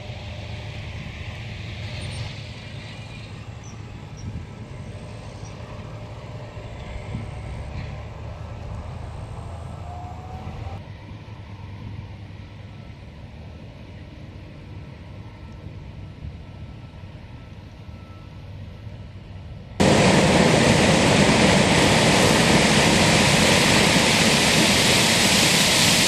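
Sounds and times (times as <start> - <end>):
diesel engines rumbling: 0.0 - 10.8, 19.8 - 26.0.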